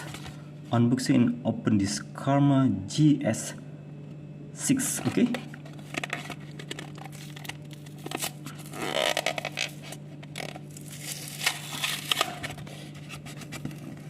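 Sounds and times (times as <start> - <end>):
steady low hum: 0.0 - 14.0
blister packaging crinkling and tearing: 5.1 - 14.0.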